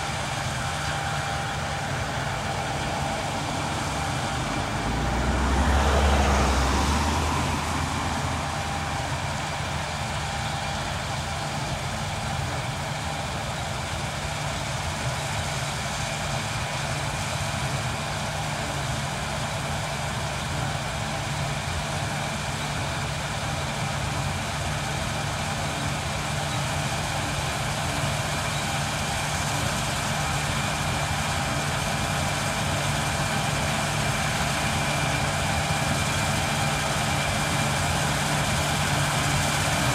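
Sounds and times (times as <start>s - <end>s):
combine harvester engine hum: 0.0s - 39.9s.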